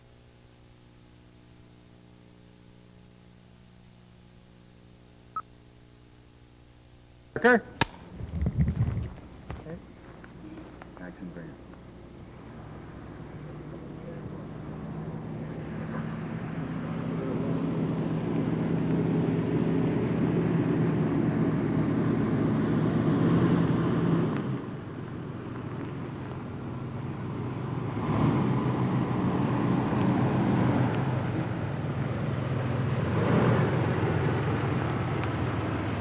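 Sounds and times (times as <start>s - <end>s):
car engine running: 8.1s - 36.0s.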